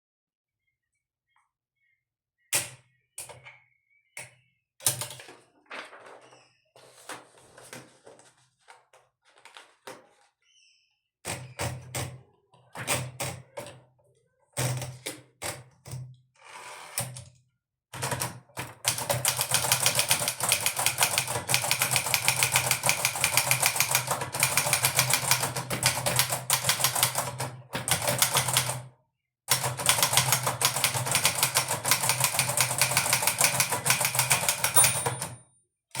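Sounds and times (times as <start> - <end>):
manual typewriter typing: 18.0 - 28.8, 29.5 - 35.4.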